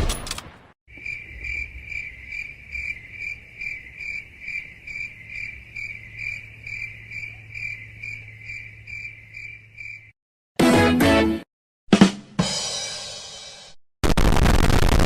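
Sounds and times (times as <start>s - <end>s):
crickets chirping: 0.9s - 10.2s.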